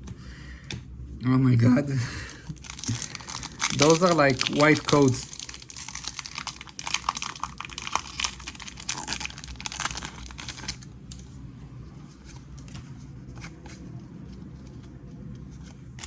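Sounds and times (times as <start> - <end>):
foil wrapper tearing and crinkling: 2.2 - 10.8.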